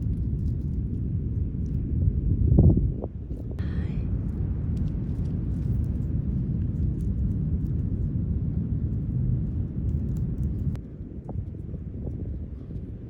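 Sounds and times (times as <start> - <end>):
wind on microphone: 0.0 - 13.0.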